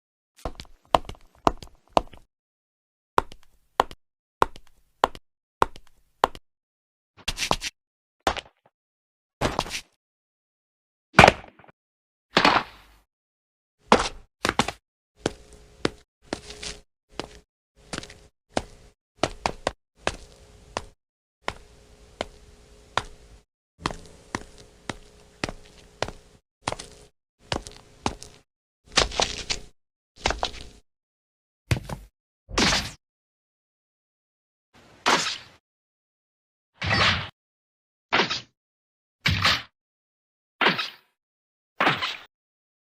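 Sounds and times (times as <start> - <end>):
scuffing footsteps: 13.9 - 30.8
sharp knocking footsteps: 17.1 - 23.2.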